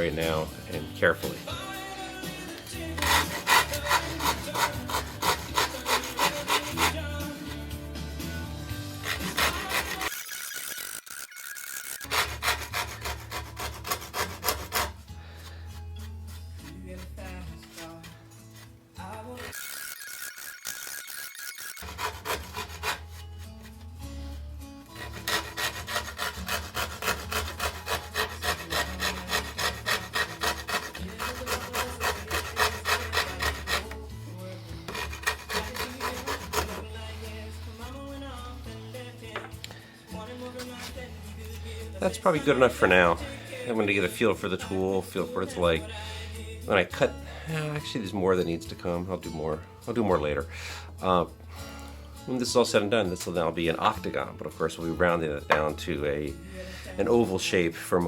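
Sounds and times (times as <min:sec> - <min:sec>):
rasp scraping wood: 0:02.3 - 0:07.7, 0:08.7 - 0:44.9.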